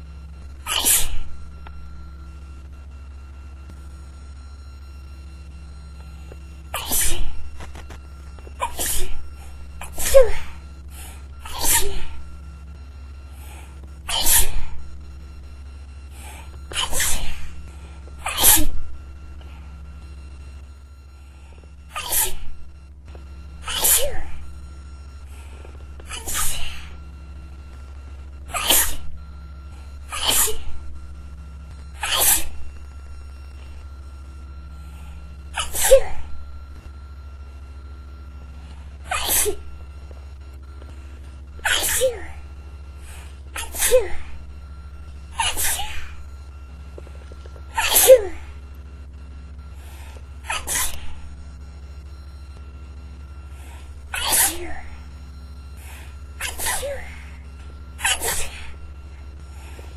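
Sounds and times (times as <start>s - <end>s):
person sneezing: 0.6s - 1.3s, 6.8s - 7.9s, 8.6s - 12.2s, 13.5s - 14.8s, 16.2s - 17.6s, 18.2s - 18.9s, 21.9s - 22.6s, 23.6s - 24.4s, 26.1s - 27.0s, 28.5s - 29.2s, 30.1s - 30.9s, 32.0s - 32.7s, 35.6s - 36.4s, 39.1s - 39.8s, 41.6s - 42.4s, 43.1s - 44.4s, 45.4s - 46.2s, 47.7s - 48.6s, 49.9s - 51.2s, 53.6s - 55.0s, 55.9s - 57.4s, 58.0s - 58.8s
person sneezing into tissue: 0.7s - 1.3s, 6.8s - 7.8s, 8.6s - 9.2s, 14.1s - 14.7s, 18.2s - 18.9s, 26.1s - 26.9s, 30.1s - 30.8s, 32.0s - 32.6s, 35.6s - 36.3s, 39.1s - 39.7s.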